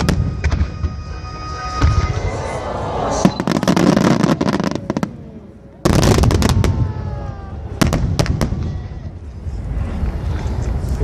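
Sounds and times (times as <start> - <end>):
low outdoor rumble: 4.8 - 11.0.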